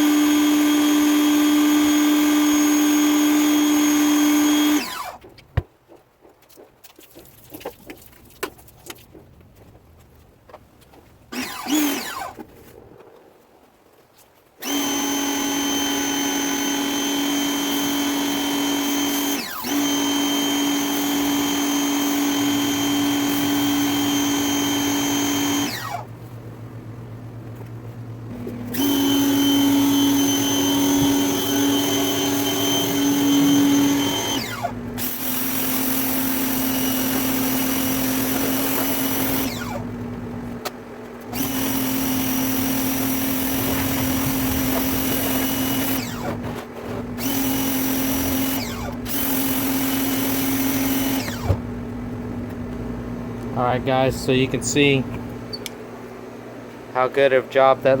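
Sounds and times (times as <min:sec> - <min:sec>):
electric pressure washer motor humming: 0:00.0 - 0:05.2, 0:11.4 - 0:12.4, 0:14.6 - 0:26.1, 0:28.3 - 0:40.0, 0:41.3 - 0:46.4, 0:47.2 - 0:51.6.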